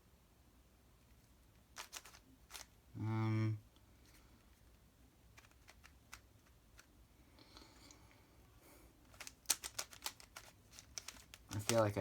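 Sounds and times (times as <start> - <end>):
puzzle cube clicking: 1.7 - 2.7, 5.3 - 6.9, 9.1 - 12.0.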